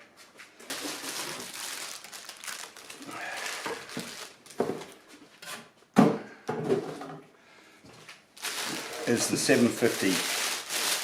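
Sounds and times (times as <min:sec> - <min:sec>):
packaging rustling and crinkling: 0:00.4 - 0:05.0, 0:08.4 - 0:11.0.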